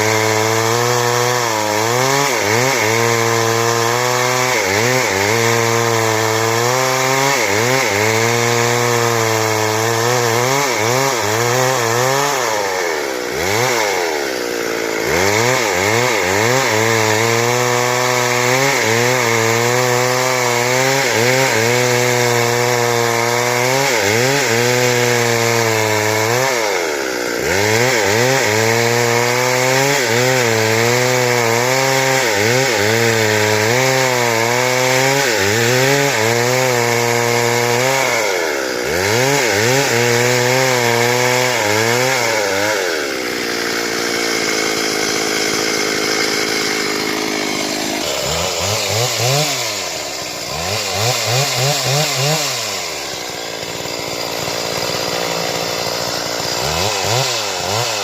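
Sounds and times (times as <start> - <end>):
chainsaw cutting timber: 0.0 - 58.0.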